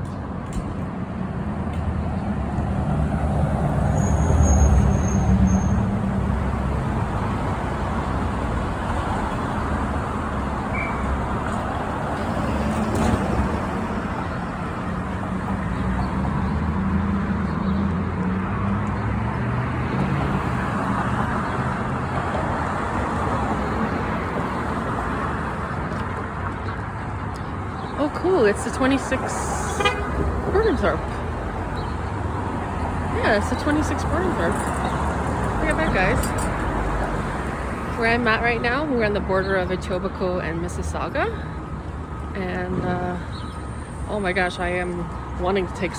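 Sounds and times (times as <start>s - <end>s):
road noise: 0.0s - 45.9s
bus engine hum: 27.8s - 41.4s.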